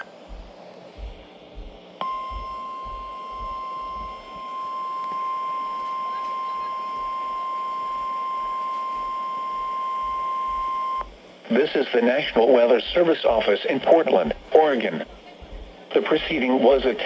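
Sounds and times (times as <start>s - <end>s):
high-pitched alarm beep: 2.0s - 11.1s.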